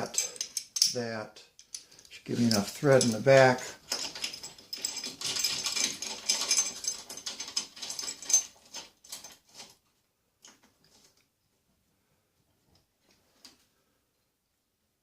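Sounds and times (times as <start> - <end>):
metal hardware clicking and scraping: 0.0 - 9.8.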